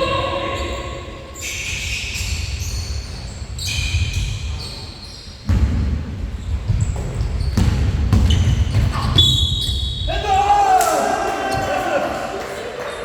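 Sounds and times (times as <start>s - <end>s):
basketballs bouncing on court: 5.4s - 10.2s.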